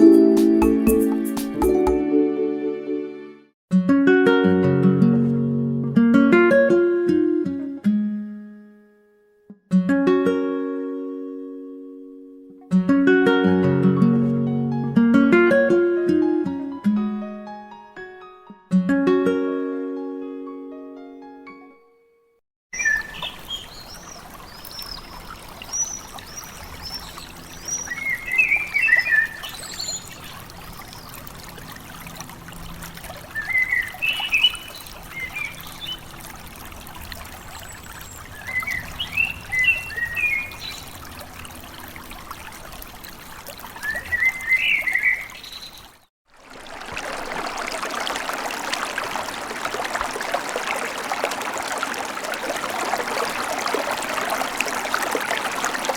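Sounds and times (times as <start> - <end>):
trickling water: 22.7 - 55.9
birds chirping: 22.8 - 31.1, 43.8 - 46.0
rush of running water: 22.8 - 55.9.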